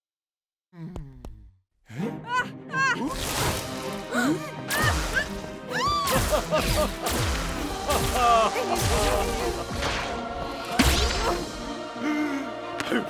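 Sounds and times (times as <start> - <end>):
background music: 1.9 - 13.0
cartoon crashes and whacks: 6.1 - 11.5.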